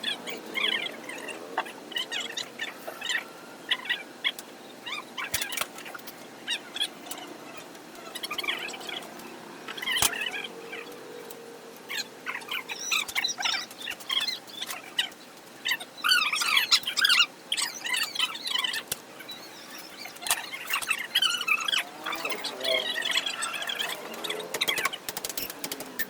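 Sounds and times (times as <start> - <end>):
birds chirping: 0.0 - 26.0
sharp clicks: 23.9 - 26.0.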